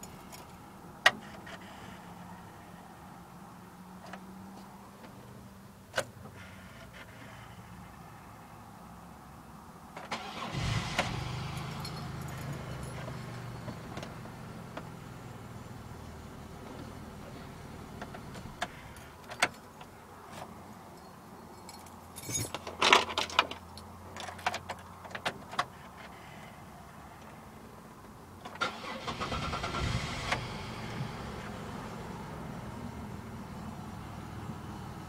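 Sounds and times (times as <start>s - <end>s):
engine cranking and running: 10.1s - 15.3s, 28.6s - 31.5s.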